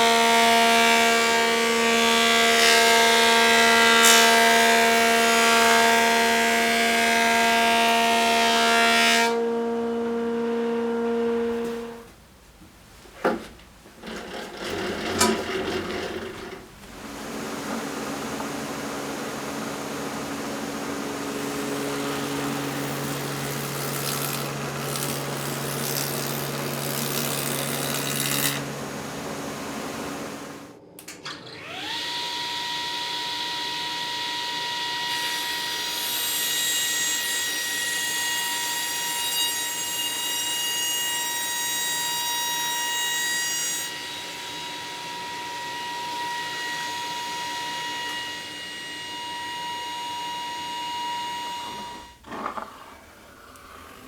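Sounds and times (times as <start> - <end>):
noisy power tool running: 14.1 - 30.7.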